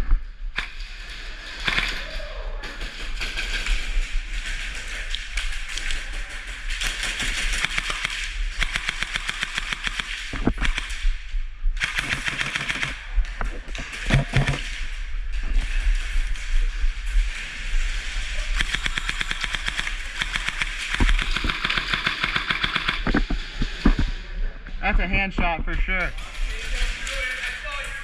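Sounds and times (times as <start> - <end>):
airsoft guns firing bursts: 1.6 - 2.1, 2.7 - 11.0, 11.8 - 13.1, 18.5 - 23.2.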